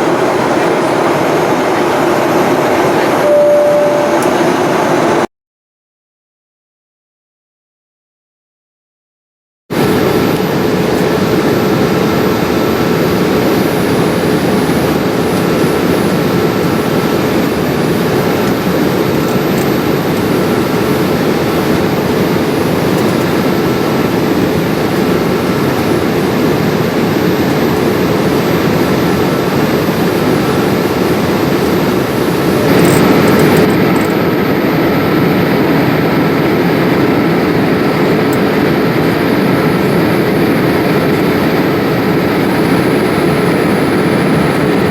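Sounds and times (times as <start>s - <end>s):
faint high whine: 0.0s - 5.3s
jet engine and airflow noise: 0.0s - 5.3s, 9.7s - 44.9s.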